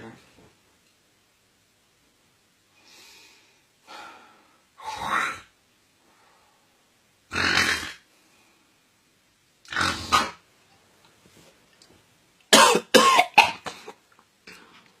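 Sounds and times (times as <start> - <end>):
man making comic snoring noises: 7.3 - 8.0.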